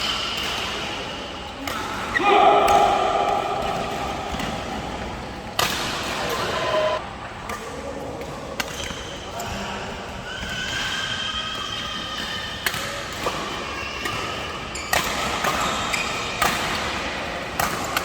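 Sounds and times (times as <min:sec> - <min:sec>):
racket hitting shuttlecock: 0:00.1 - 0:06.8, 0:12.2 - 0:18.0
shoes squeaking on court floor: 0:13.6 - 0:16.4.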